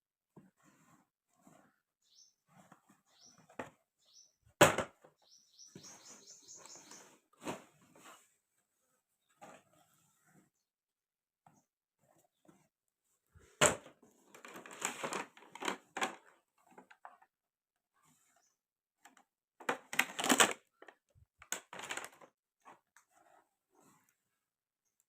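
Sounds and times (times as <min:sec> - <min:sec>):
packaging rustling and clattering: 0:14.1 - 0:17.3, 0:19.6 - 0:22.9.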